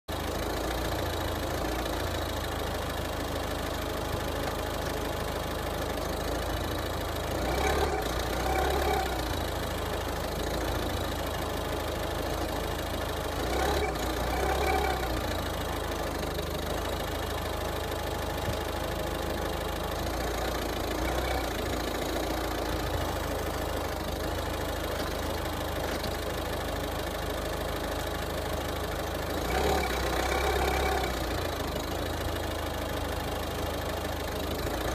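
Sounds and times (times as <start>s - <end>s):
car engine idling: 0.1s - 34.9s
engine revving: 7.2s - 9.5s, 13.4s - 15.6s, 29.3s - 31.8s.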